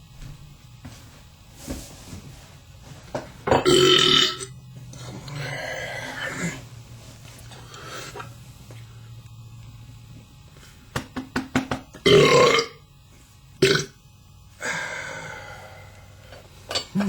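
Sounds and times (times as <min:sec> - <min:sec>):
man belching: 0:03.6 - 0:04.5, 0:12.0 - 0:12.8, 0:13.6 - 0:14.0
breathy sound: 0:05.0 - 0:06.7, 0:14.6 - 0:16.5.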